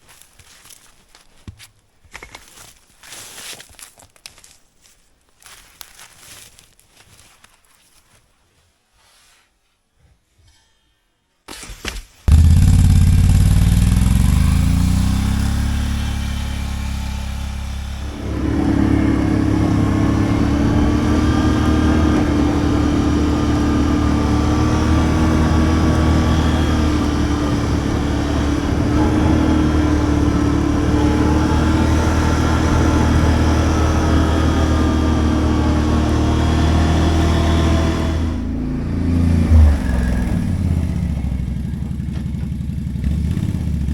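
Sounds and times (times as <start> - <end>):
atv engine: 12.3 - 43.9.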